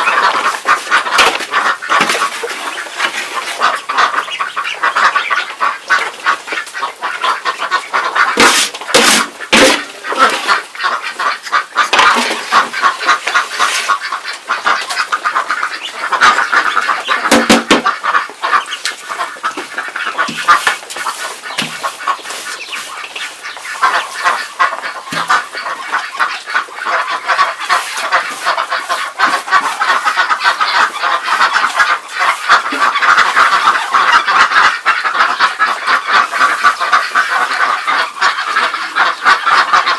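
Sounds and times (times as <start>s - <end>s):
ducks calling and chattering: 0.0s - 39.9s
sharp knocks: 17.3s - 17.9s.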